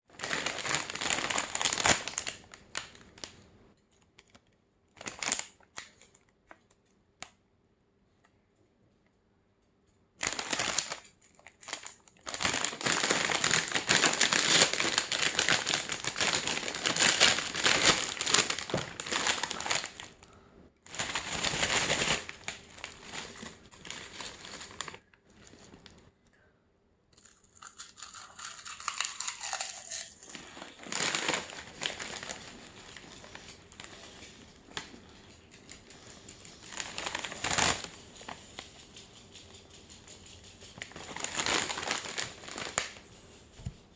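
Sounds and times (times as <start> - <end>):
chip bag crinkling: 0.1 - 3.4, 4.9 - 6.2, 10.2 - 26.0, 27.2 - 43.3
potato chips being crunched: 0.1 - 3.4, 10.2 - 25.0, 27.2 - 35.8, 40.2 - 43.0.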